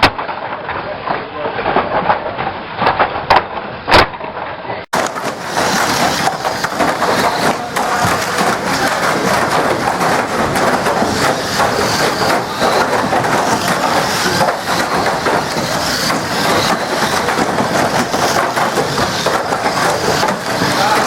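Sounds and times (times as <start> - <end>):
cars colliding and scraping: 5.0 - 21.0.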